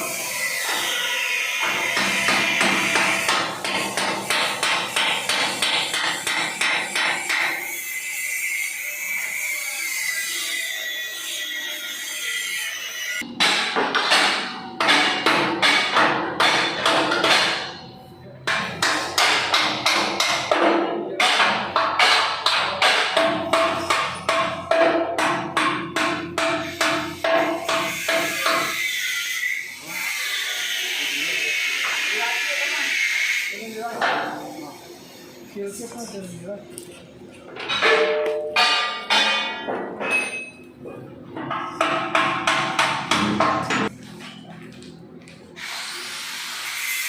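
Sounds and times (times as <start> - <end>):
hammer striking metal: 0.5 - 7.8, 13.2 - 29.1, 37.6 - 40.7, 41.4 - 44.0.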